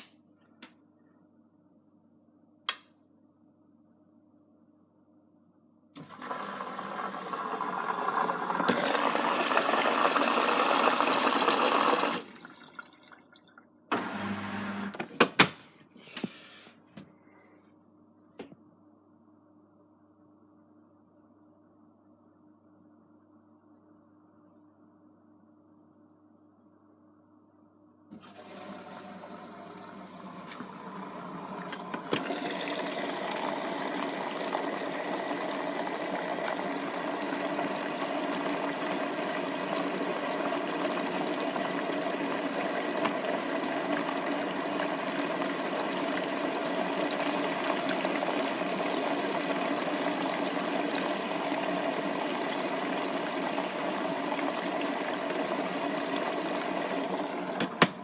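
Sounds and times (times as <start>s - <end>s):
washing machine filling with water: 6.0s - 14.9s, 28.1s - 58.0s.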